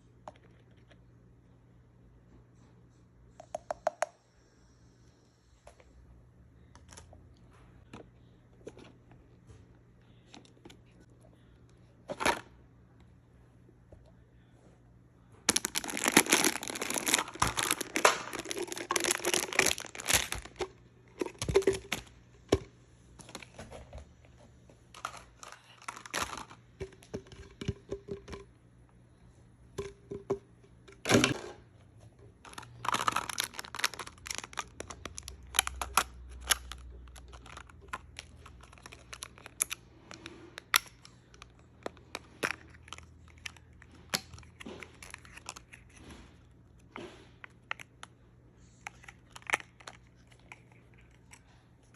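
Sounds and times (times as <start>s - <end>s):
packaging ripping and rustling: 15.5s - 20.6s, 32.5s - 39.8s.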